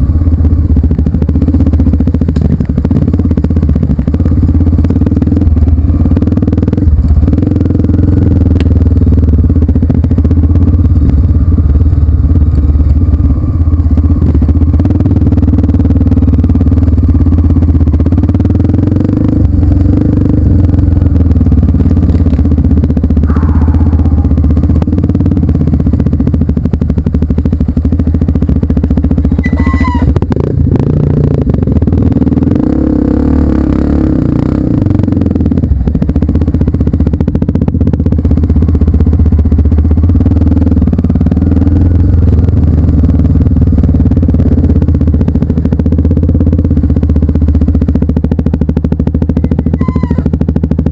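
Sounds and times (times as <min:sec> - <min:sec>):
motorcycle engine chugging: 0:00.0 - 0:50.9.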